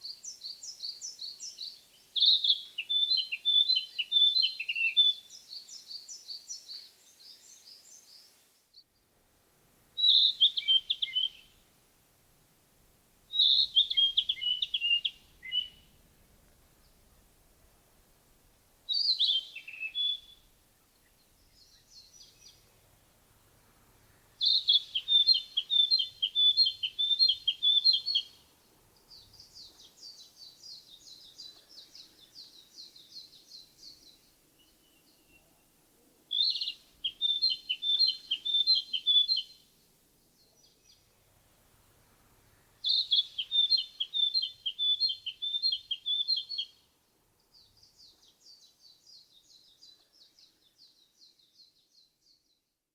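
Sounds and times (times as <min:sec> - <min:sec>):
bird singing whistled notes: 0:00.0 - 0:08.4, 0:10.0 - 0:11.6, 0:13.3 - 0:16.0, 0:18.9 - 0:20.5, 0:21.1 - 0:22.7, 0:24.4 - 0:28.4, 0:29.1 - 0:35.6, 0:36.3 - 0:39.6, 0:42.8 - 0:46.9, 0:47.5 - 0:52.6.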